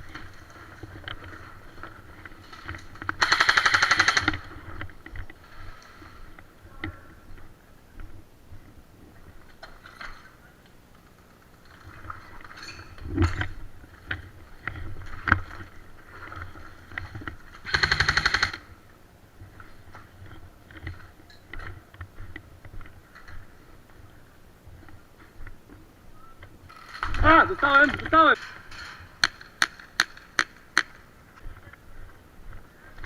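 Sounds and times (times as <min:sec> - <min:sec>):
airsoft gun full-auto burst: 0:03.2 - 0:04.4, 0:17.6 - 0:18.6.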